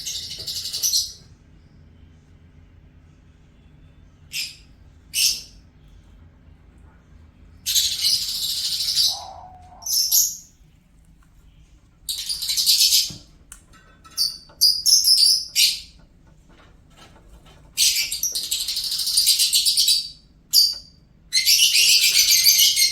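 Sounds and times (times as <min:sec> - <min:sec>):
bird scratchy chirping: 0:07.7 - 0:10.6, 0:12.1 - 0:13.1, 0:17.8 - 0:20.1.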